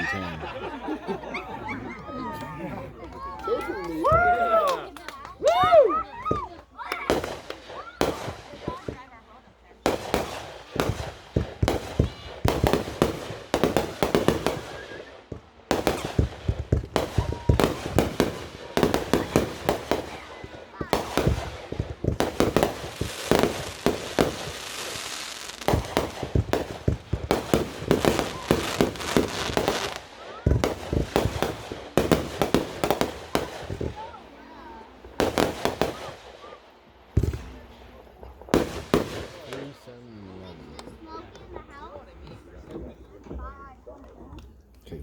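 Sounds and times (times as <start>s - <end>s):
dense crackling hiss: 7.2s - 42.0s.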